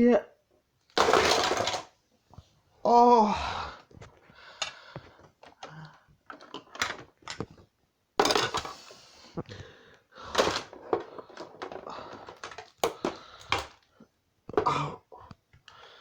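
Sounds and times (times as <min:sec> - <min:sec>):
plastic figures clicking and knocking: 0:00.9 - 0:01.9, 0:04.0 - 0:08.8, 0:10.2 - 0:13.9.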